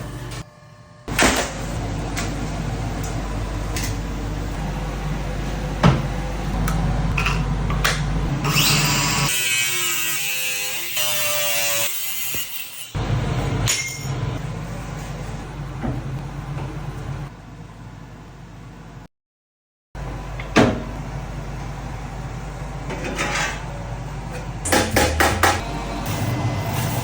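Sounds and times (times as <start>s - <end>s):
power tools working steel: 8.3s - 13.6s, 25.1s - 27.0s.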